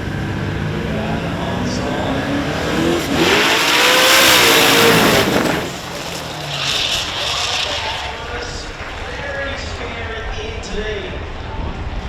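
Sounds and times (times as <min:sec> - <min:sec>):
car engine revving hard: 0:00.0 - 0:08.4
tyre squeal: 0:02.5 - 0:08.2.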